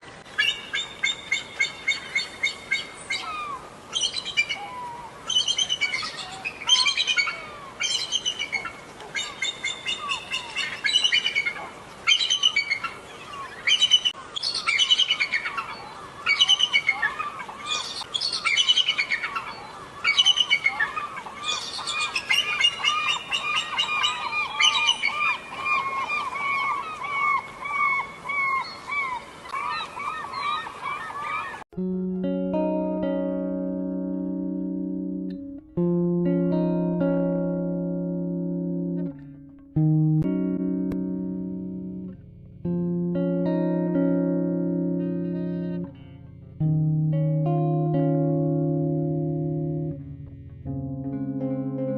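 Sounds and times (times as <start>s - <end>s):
eagle calling: 0.4s - 31.6s.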